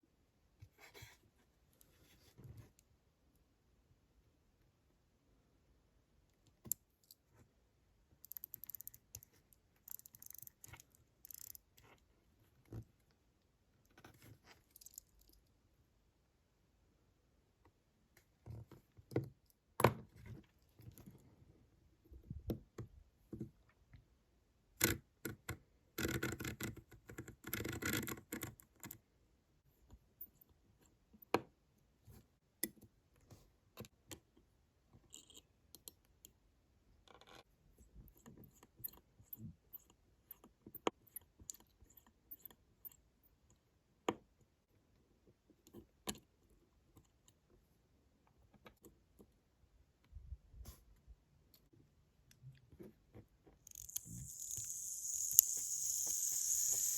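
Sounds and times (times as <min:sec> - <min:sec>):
small tools clicking: 0:08.2 - 0:11.6, 0:53.6 - 0:56.9.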